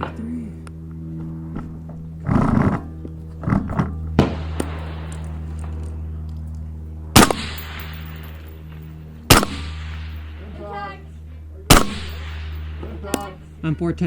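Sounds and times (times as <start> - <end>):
rifle shots with echo: 4.2 - 5.3, 7.2 - 8.3, 9.3 - 10.4, 11.7 - 13.4.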